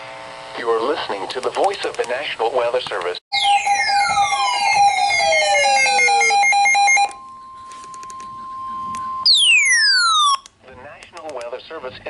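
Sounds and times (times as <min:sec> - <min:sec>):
rapidly pulsing beeps: 0:03.4 - 0:10.4.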